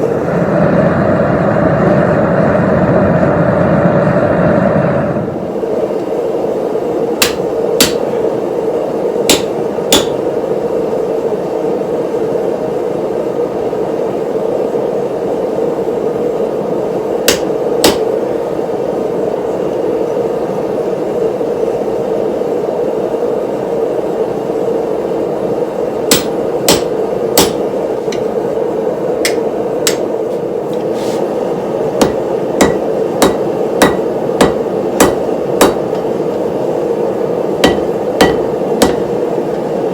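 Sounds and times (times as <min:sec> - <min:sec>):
steady rushing noise: 0:00.0 - 0:10.3
hammer striking steel: 0:07.2 - 0:08.2, 0:09.3 - 0:10.3, 0:17.2 - 0:18.1, 0:26.1 - 0:28.3, 0:29.2 - 0:30.1, 0:32.0 - 0:36.1, 0:37.6 - 0:39.2.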